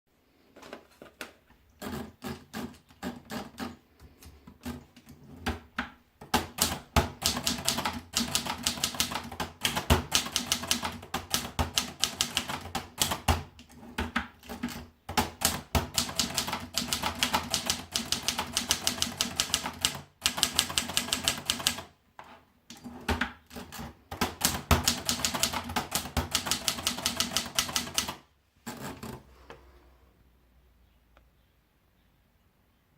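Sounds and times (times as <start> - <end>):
manual typewriter keystrokes: 1.8 - 21.9, 22.7 - 29.2.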